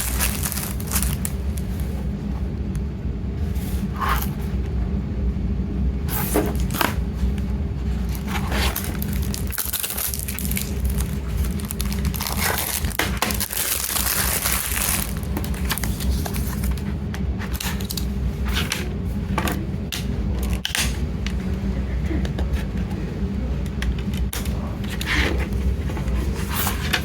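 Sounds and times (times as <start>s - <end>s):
plastic packaging crinkling: 0.0s - 2.2s, 8.0s - 16.9s.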